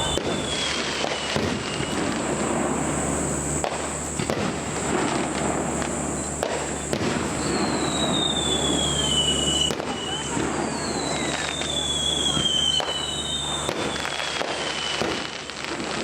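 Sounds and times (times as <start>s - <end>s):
steady low hum: 0.0s - 0.6s
falling firework whistle: 0.0s - 16.0s
fireworks bangs: 0.0s - 16.0s
fireworks crackling: 0.0s - 16.0s.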